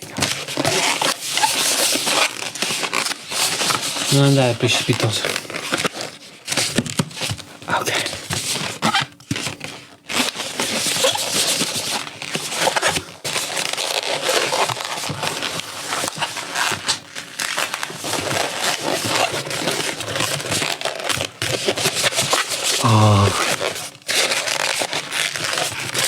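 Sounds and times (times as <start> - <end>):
crinkling crackling noise: 2.1 - 6.0.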